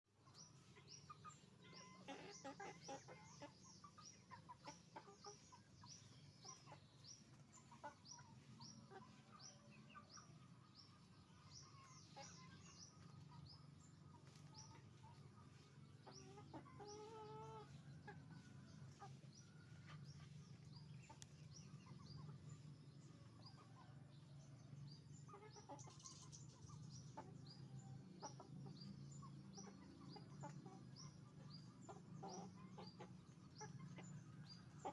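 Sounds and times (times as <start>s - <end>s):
chickens clucking: 0.1s - 34.9s.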